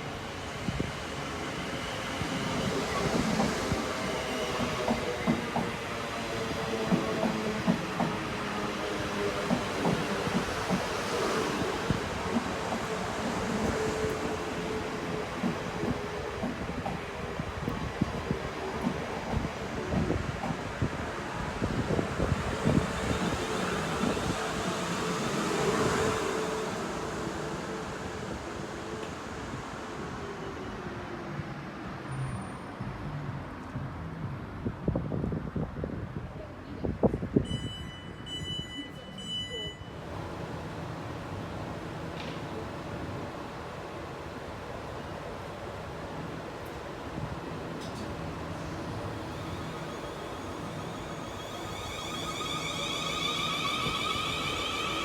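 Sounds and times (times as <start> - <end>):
train wheels on rails: 0.1 - 30.4, 46.6 - 55.0
train rail rumble: 40.0 - 55.0.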